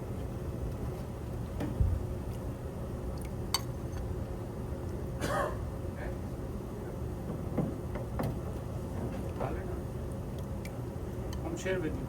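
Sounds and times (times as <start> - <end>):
low room hum: 0.0 - 12.0
person clearing throat: 5.2 - 5.6.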